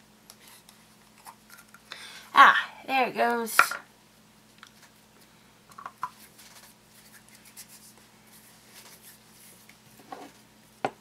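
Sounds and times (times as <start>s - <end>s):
hands rubbing play dough: 6.0s - 10.0s.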